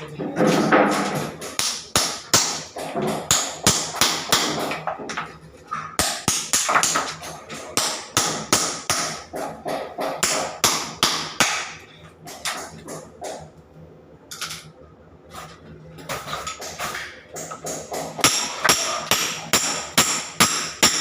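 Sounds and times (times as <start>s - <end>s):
hammer blows ringing: 17.8s - 21.0s.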